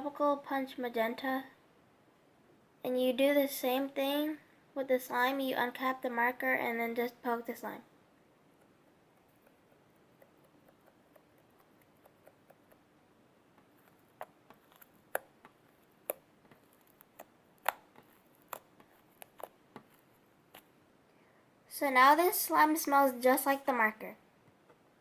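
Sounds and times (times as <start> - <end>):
marker tip tapping slime: 13.6 - 20.7.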